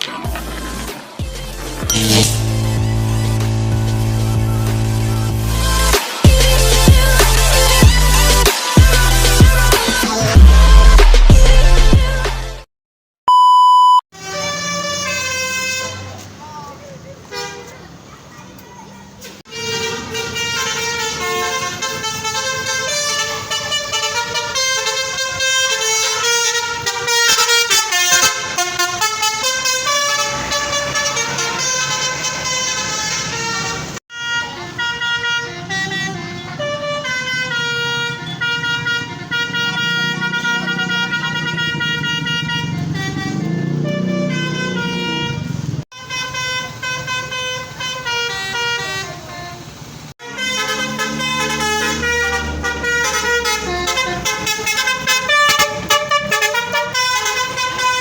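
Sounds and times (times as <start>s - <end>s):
musical air horn melodies: 1.8s - 12.0s, 19.5s - 49.6s, 50.2s - 58.0s
low rumble: 1.9s - 6.0s.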